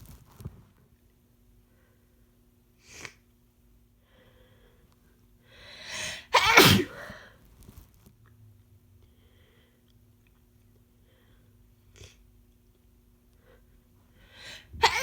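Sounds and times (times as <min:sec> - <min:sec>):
person breathing: 0:04.0 - 0:06.3, 0:09.1 - 0:09.9, 0:13.4 - 0:14.8
person sneezing: 0:05.9 - 0:07.2, 0:14.7 - 0:15.0.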